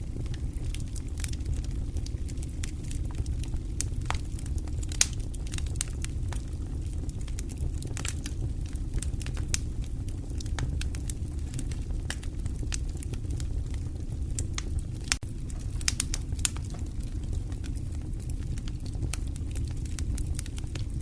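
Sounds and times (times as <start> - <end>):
fire crackling and popping: 0.0 - 21.0.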